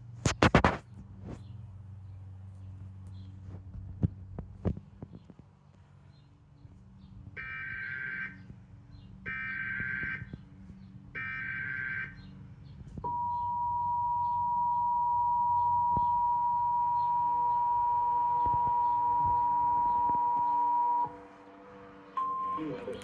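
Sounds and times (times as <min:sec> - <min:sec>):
electronic data tone bursts: 0:13.1 - 0:21.2.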